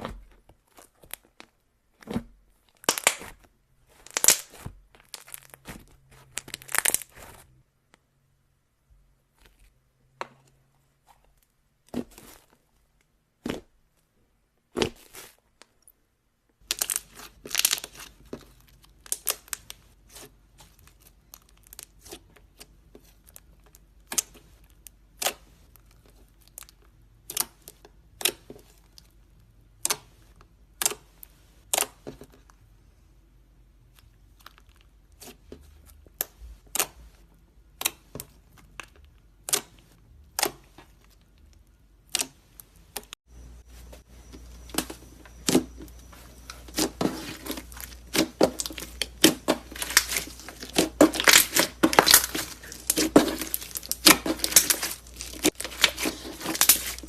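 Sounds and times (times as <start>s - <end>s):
slime crinkling and tearing: 2.6s - 7.5s, 16.6s - 29.1s, 44.7s - 57.0s.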